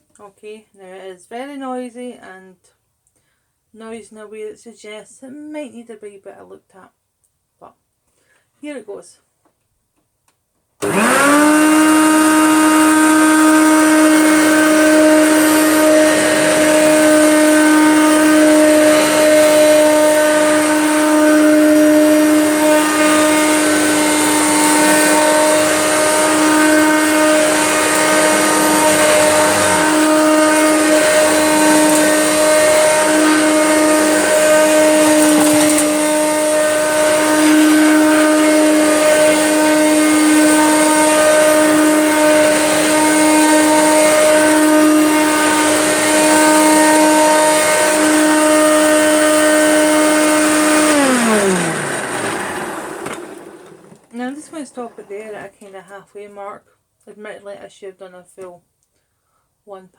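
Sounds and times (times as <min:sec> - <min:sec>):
vacuum cleaner motor whining: 0:10.8 - 0:55.4.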